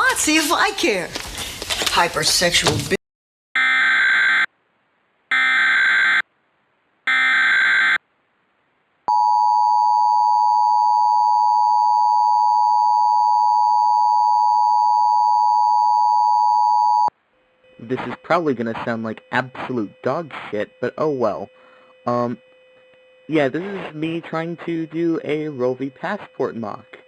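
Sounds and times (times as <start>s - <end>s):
buzzing data bursts: 17.6s - 22.4s
two-tone attention signal: 17.7s - 22.4s.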